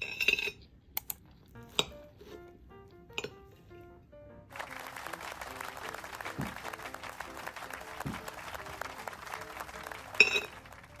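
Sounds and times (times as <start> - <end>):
light background music: 1.5 - 11.0
clapping applause: 4.5 - 11.0.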